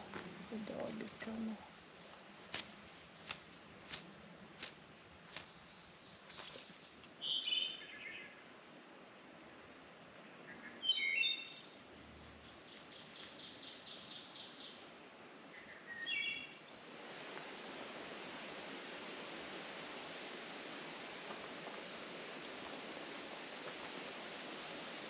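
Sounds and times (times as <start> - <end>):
steady rushing hiss: 0.0 - 6.6, 16.7 - 25.0
songbird calling: 5.3 - 8.4, 10.4 - 14.8, 15.5 - 16.9.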